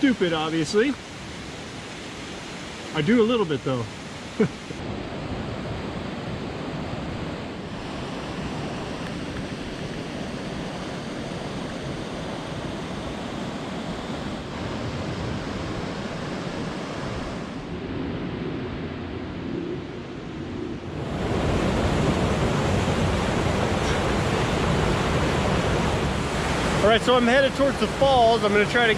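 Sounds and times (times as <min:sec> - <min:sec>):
waterfall and flowing water: 0:00.0 - 0:05.0, 0:21.0 - 0:28.9.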